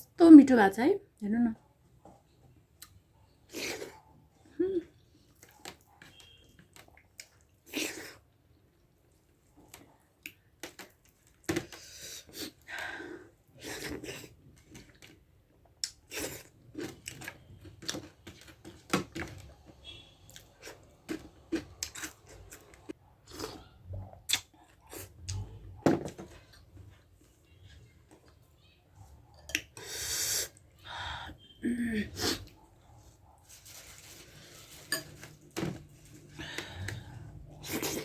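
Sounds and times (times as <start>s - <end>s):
person chewing soft food: 13.4s - 19.5s, 20.3s - 25.6s
wet mouth smacks and clicks: 24.3s - 24.6s.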